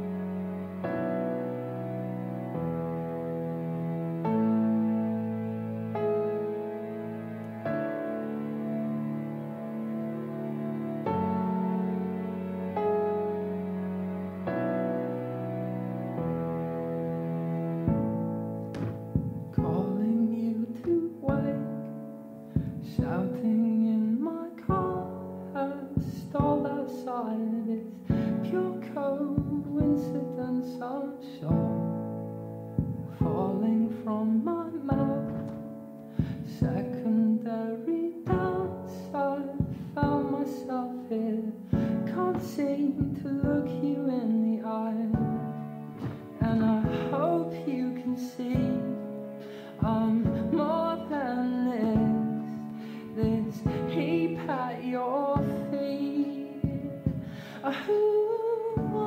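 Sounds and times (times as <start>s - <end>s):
plucked string notes: 7.0s - 23.6s, 41.7s - 59.0s
person singing: 19.1s - 32.0s, 32.8s - 59.0s.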